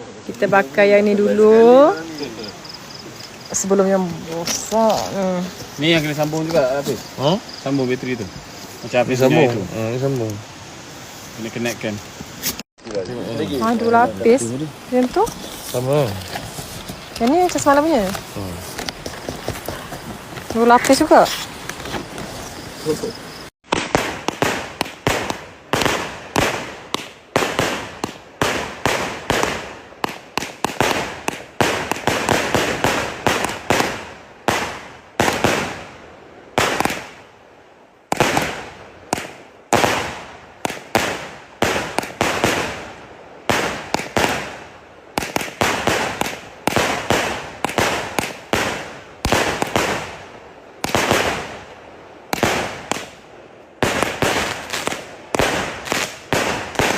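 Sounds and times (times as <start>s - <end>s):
firecrackers cracking in volleys: 23.6s - 36.0s, 36.6s - 37.2s, 38.1s - 51.7s, 52.3s - 56.9s.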